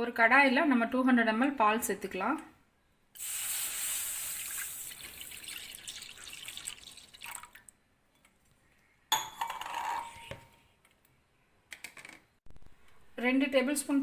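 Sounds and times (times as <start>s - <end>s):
milk pouring into a pan: 3.7s - 7.7s.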